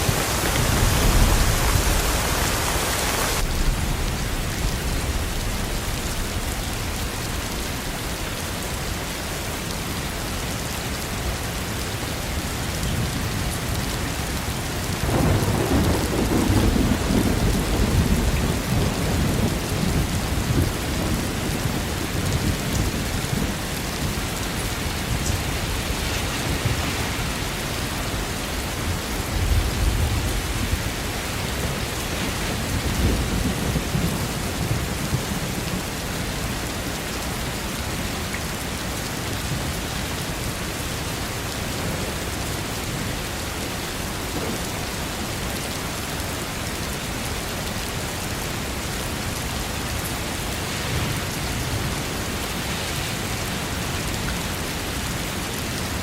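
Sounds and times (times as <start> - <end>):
thunder rumbling: 0.0 - 8.4, 15.0 - 35.8
heavy rain: 0.0 - 56.0.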